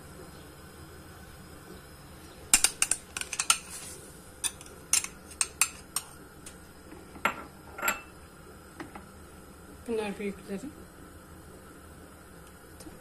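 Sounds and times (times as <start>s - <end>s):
utensil clinking on kitchenware: 2.6s - 3.7s, 4.4s - 6.1s.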